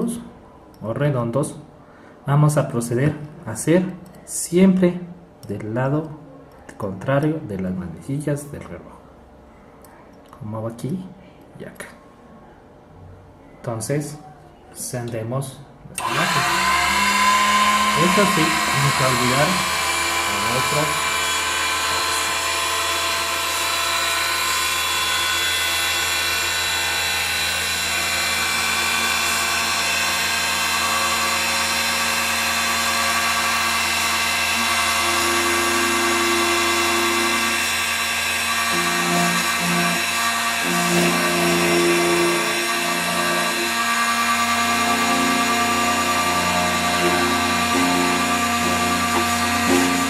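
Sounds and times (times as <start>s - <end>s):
key cutting machine whining: 16.0s - 50.0s.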